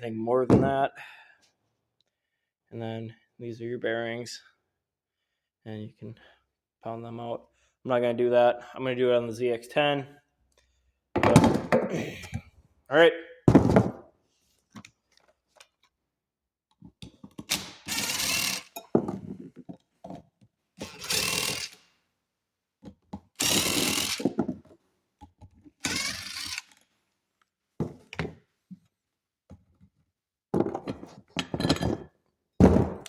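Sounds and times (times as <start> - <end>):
power tool bursts: 17.5 - 18.8, 20.8 - 21.8, 23.4 - 24.4, 25.8 - 26.8.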